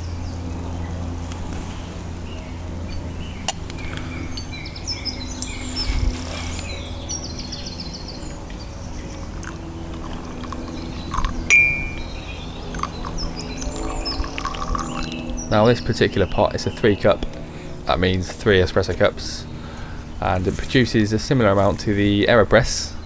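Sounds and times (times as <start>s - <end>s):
birds chirping: 0.0s - 23.0s
sharp metal clinks: 10.5s - 15.2s.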